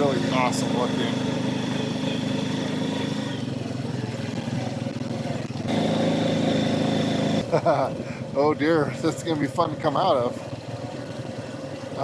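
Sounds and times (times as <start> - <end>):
atv engine running: 0.0 - 12.0.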